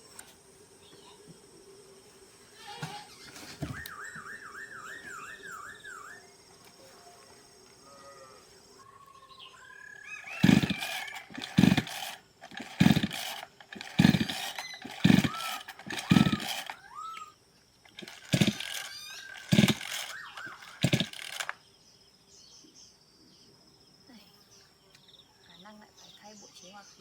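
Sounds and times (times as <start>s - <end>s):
chainsaw recoil starter pulls: 10.2s - 17.2s, 17.9s - 21.6s.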